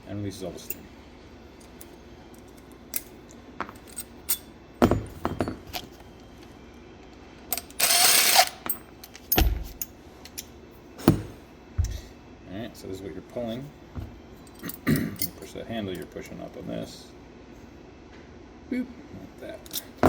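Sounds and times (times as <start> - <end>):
heavy thump: 11.0 - 12.0.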